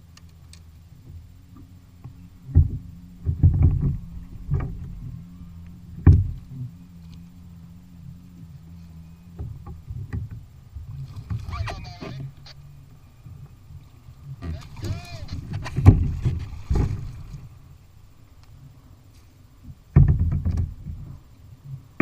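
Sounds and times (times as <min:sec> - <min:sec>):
low steady hum: 0:00.0 - 0:22.0
thumps on plastic kayak hull: 0:02.5 - 0:05.0, 0:05.9 - 0:06.5, 0:15.5 - 0:17.1, 0:19.9 - 0:21.0.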